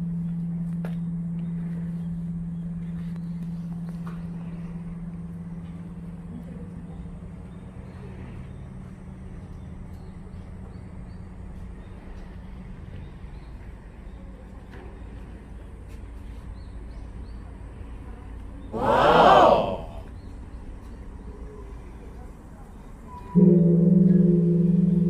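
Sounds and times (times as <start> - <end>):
outdoor background noise: 0.0 - 25.0
deep bell hum: 23.3 - 25.0.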